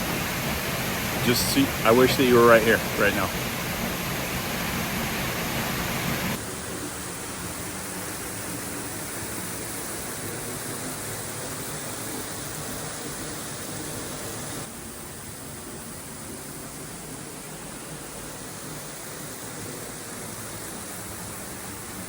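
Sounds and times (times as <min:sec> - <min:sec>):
waterfall rushing: 0:00.0 - 0:14.7.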